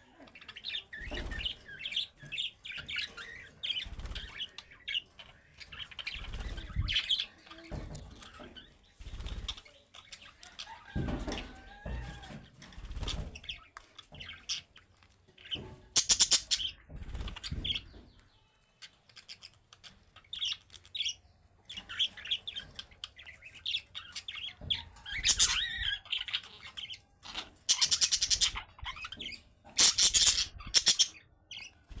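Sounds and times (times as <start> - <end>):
wings fluttering: 0.9 - 18.2, 24.5 - 31.2, 31.8 - 32.0
wings flapping: 1.0 - 1.8, 3.1 - 5.0, 5.6 - 9.8, 10.4 - 13.7, 16.0 - 17.9
budgerigars chirping: 15.4 - 18.0, 19.1 - 32.0.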